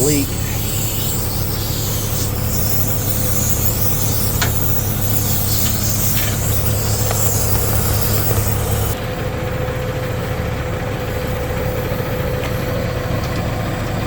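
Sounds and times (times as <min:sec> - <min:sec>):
compressed air hissing: 0:00.0 - 0:09.0, 0:10.9 - 0:13.0
diesel engine idling: 0:00.0 - 0:14.0.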